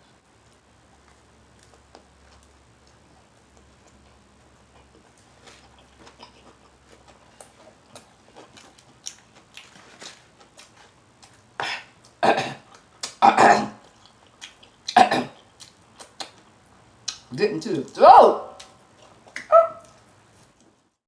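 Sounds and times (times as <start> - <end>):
loud burps: 15.0 - 15.4.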